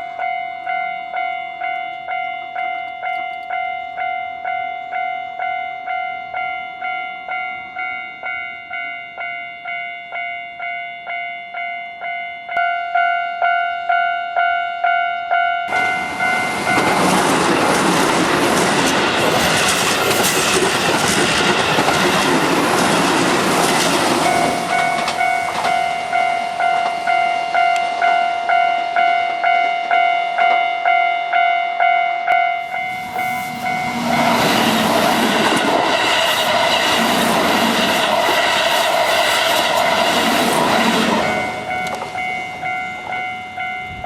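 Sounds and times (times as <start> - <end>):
level crossing bell ringing: 0.0 - 18.9, 21.7 - 35.5, 40.9 - 44.0
train wheels clicking over rail joints: 15.7 - 27.2, 32.8 - 43.5
train passing at speed: 15.7 - 30.6, 32.2 - 44.0.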